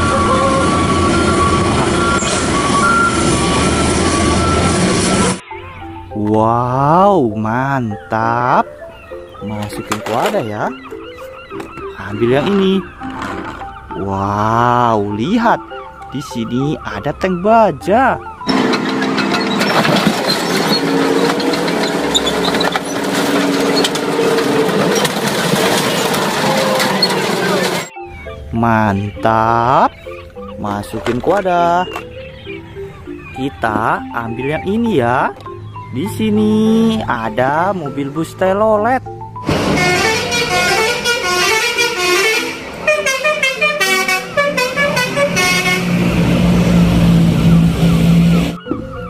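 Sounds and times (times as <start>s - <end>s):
multi-tone musical horn: 0.0s - 5.8s, 18.5s - 22.6s, 39.5s - 46.1s.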